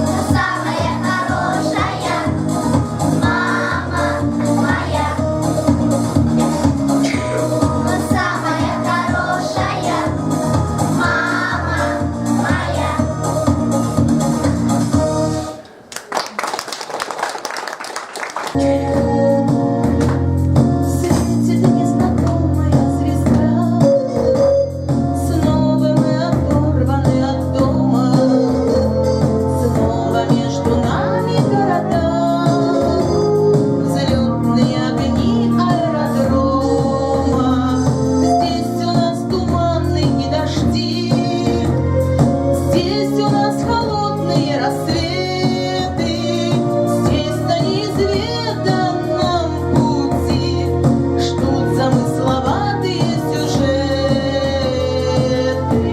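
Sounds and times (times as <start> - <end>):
steady bass line: 0.0 - 15.4
song with singing voice: 0.0 - 15.9, 18.4 - 55.9
person singing: 18.6 - 19.7, 42.7 - 55.9
organ-like keyboard: 18.6 - 21.1.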